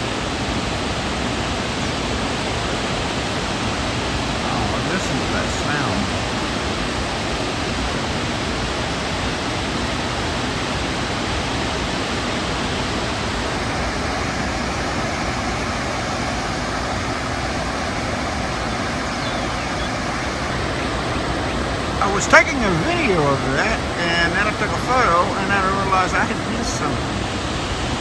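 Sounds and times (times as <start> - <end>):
waterfall rushing: 19.1 - 27.0.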